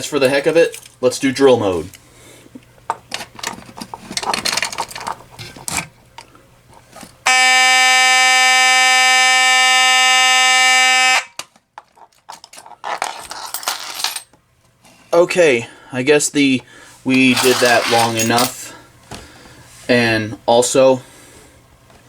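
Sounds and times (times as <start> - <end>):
equipment clattering and clicking: 2.9 - 7.2, 17.2 - 18.7
fire alarm horn buzzing: 7.2 - 11.4.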